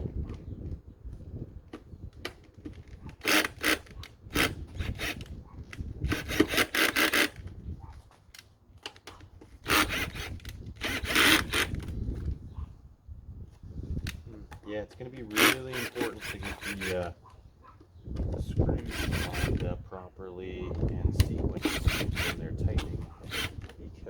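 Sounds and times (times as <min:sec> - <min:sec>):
parts rubbing and scraping: 0:02.2 - 0:07.5, 0:08.1 - 0:12.4, 0:14.1 - 0:19.8, 0:20.7 - 0:24.0.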